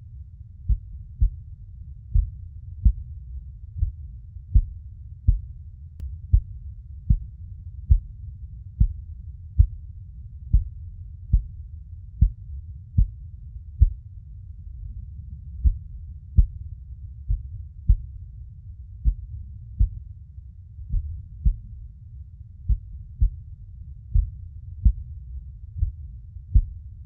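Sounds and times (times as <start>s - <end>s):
steady low rumble: 0.0s - 27.0s
heartbeat thumps: 0.7s - 1.5s, 2.1s - 5.6s, 6.3s - 8.2s, 8.8s - 9.8s, 10.5s - 11.6s, 12.2s - 13.2s, 13.8s - 14.0s, 15.6s - 18.3s, 19.0s - 20.1s, 20.8s - 21.8s, 22.6s - 23.5s, 24.1s - 27.0s.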